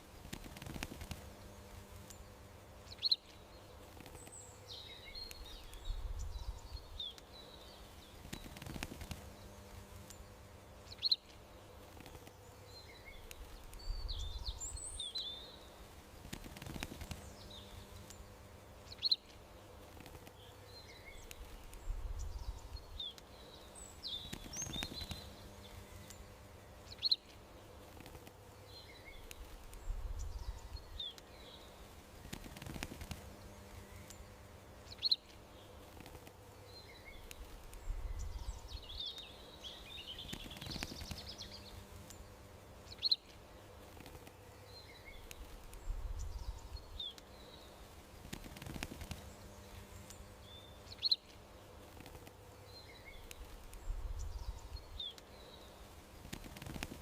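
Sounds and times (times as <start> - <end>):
faint steady hum: 0.0 - 57.0
songbirds chirping: 0.0 - 57.0.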